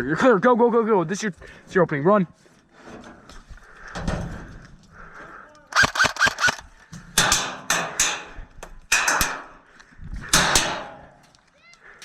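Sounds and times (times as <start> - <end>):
airsoft gun shots: 5.8 - 6.6.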